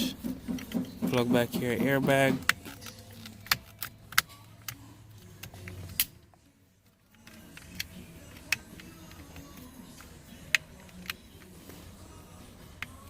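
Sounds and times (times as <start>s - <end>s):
handling noise: 0.0s - 6.1s.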